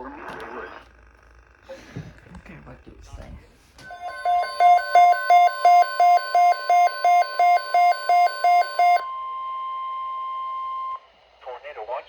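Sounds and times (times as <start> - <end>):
weather radio alert beeping: 3.8 - 9.0
steady alarm tone: 3.8 - 9.2.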